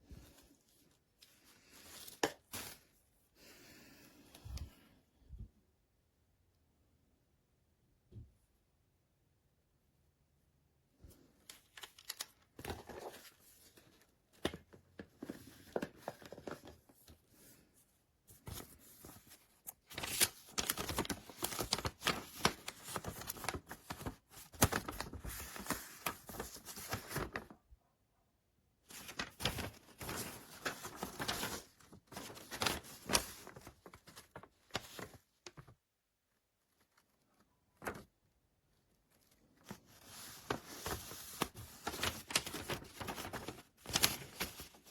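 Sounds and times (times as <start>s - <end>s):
crinkly material rustling: 11.1s - 27.7s, 28.8s - 44.9s.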